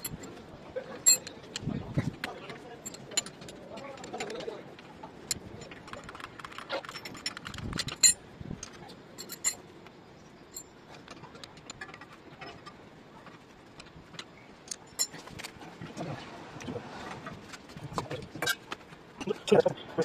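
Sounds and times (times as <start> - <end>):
metallic clinks of spanners: 1.0 - 1.3, 9.2 - 9.6.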